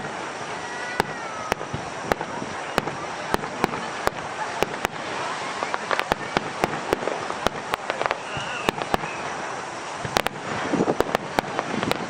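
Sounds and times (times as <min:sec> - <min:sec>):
fireworks crackling hiss: 0:00.0 - 0:12.0
fireworks popping and banging: 0:00.0 - 0:12.0.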